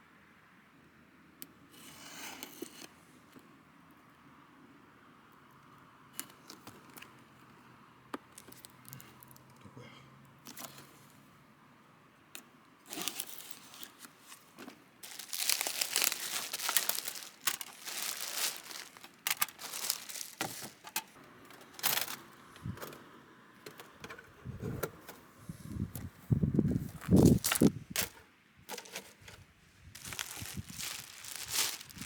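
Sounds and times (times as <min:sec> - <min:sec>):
crinkling and rustling: 0:06.2 - 0:07.6, 0:08.2 - 0:09.6, 0:12.9 - 0:23.0, 0:23.6 - 0:32.0.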